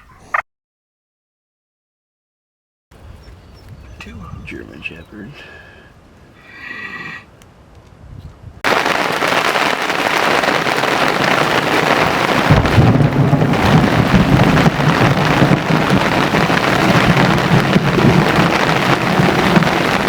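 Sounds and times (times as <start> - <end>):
heavy rain pouring: 8.7 - 20.0
thunder rumbling: 8.7 - 20.0.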